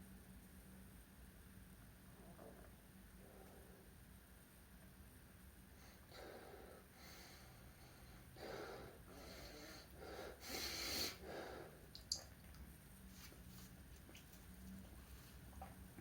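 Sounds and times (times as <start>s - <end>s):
man taking wheezy breaths: 5.9s - 11.8s.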